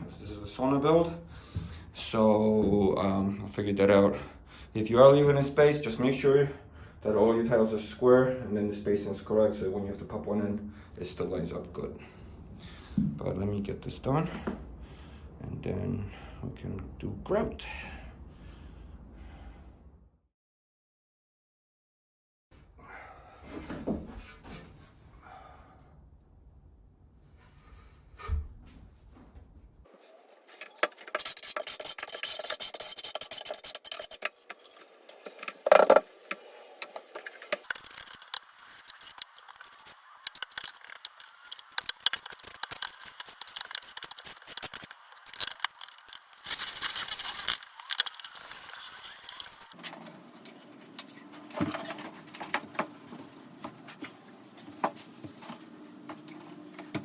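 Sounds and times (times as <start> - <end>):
trowel scraping mortar: 30.5 - 49.8.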